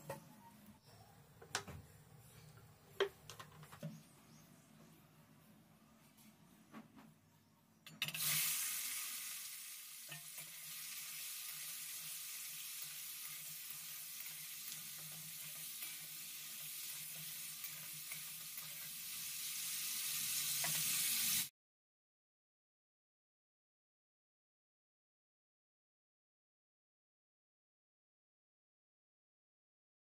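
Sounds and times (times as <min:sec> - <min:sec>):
food sizzling in hot oil: 0:08.0 - 0:21.5.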